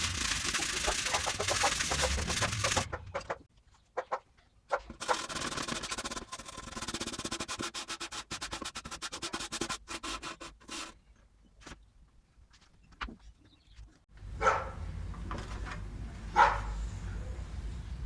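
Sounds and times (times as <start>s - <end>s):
sanding strokes on metal: 0.0s - 3.0s, 5.0s - 11.0s.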